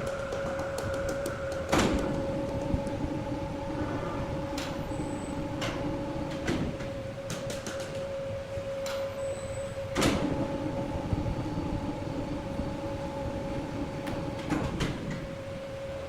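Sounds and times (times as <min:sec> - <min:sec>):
low machine tone: 0:00.0 - 0:16.0
scattered clicks: 0:07.3 - 0:08.1.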